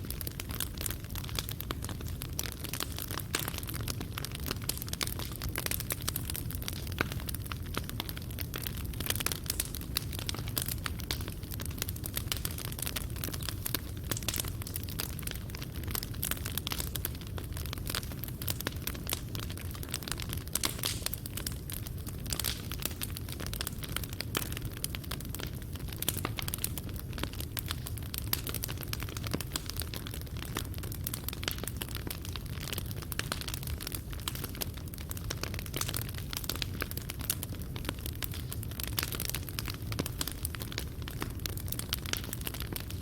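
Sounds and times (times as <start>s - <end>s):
low rumble of flames: 0.0s - 43.0s
wood fire crackling and popping: 0.0s - 43.0s.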